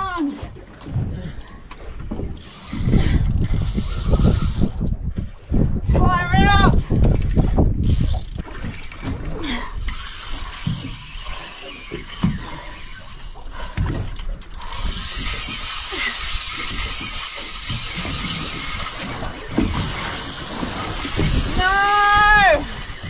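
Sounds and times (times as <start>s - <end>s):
fishing reel ratcheting: 2.4s - 5.0s, 7.8s - 9.0s, 9.7s - 23.0s.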